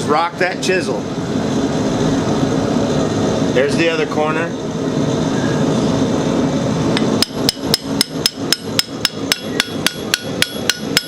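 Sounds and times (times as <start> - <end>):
steady hum: 0.0 - 11.0
hammer striking chisel on iron: 7.0 - 11.0.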